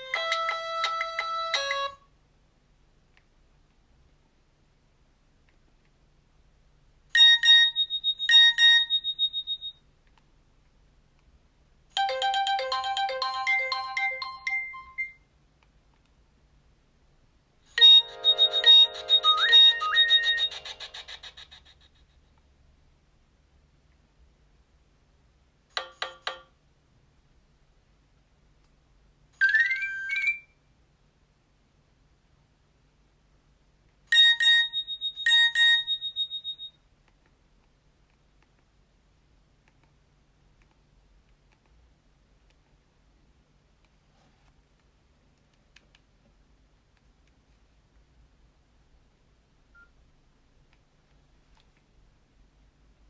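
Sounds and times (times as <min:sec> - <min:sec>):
phone melody notes: 0:00.0 - 0:02.0, 0:12.0 - 0:15.2, 0:17.7 - 0:21.1
phone beeps: 0:07.2 - 0:09.8, 0:17.8 - 0:21.0, 0:34.2 - 0:36.8.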